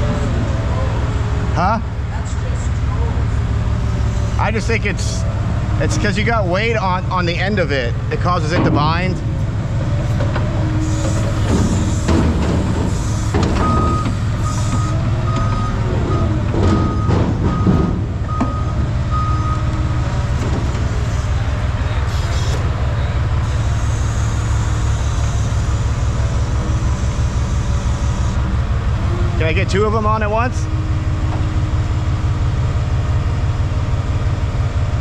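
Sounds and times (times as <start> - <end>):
forklift engine rumble: 0.0 - 35.0
forklift reversing alarm beeps: 13.0 - 20.2, 23.0 - 28.5.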